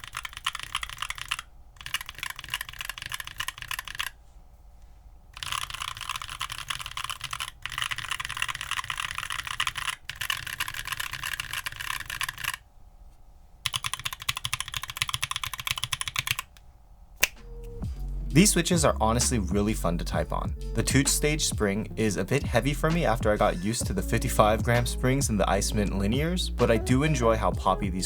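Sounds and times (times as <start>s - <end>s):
fast mechanical keyboard typing: 0.0s - 4.2s, 5.4s - 12.6s, 13.6s - 16.5s.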